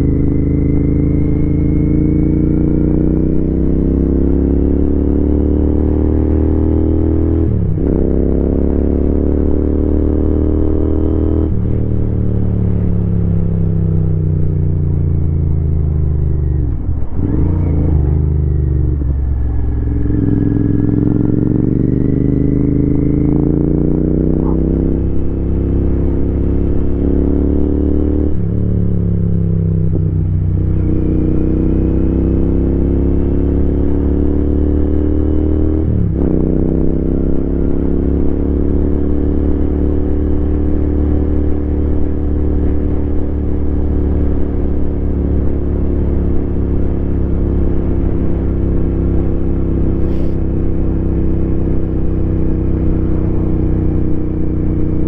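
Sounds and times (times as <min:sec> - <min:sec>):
motorcycle engine and exhaust: 0:00.0 - 0:55.0.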